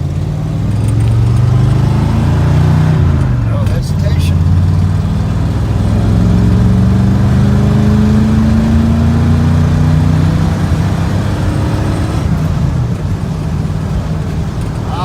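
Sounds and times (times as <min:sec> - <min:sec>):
truck engine accelerating: 0:00.0 - 0:15.0.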